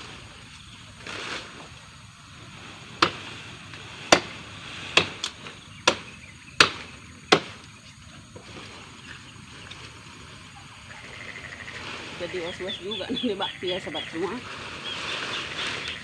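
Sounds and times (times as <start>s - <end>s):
blade chopping wood: 4.1s - 4.4s, 5.0s - 7.6s.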